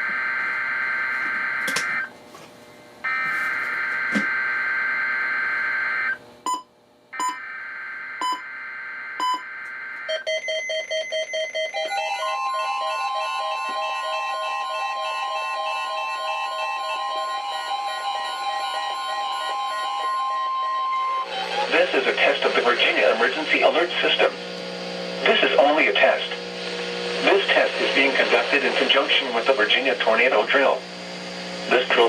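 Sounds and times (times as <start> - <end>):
steady warning alarm tone: 0.0 - 2.1, 3.0 - 32.0
overlapping beeping alarms: 7.2 - 24.3.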